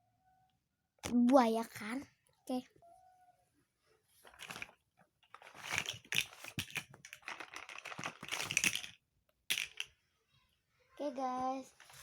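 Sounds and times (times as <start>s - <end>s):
plastic bricks clicking and rattling: 4.3s - 10.0s.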